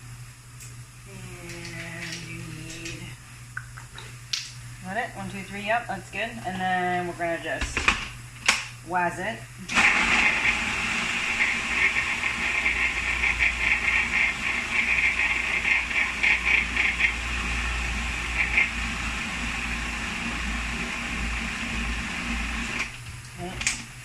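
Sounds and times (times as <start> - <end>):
food processor whirring: 9.7 - 23.4.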